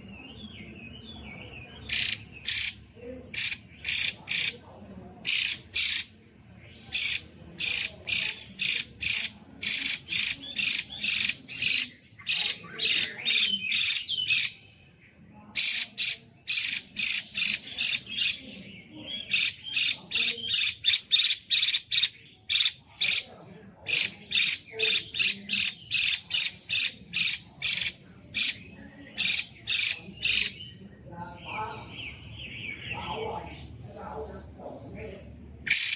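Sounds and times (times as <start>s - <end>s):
bird calling sharp notes: 1.9s - 4.6s, 35.7s - 35.9s.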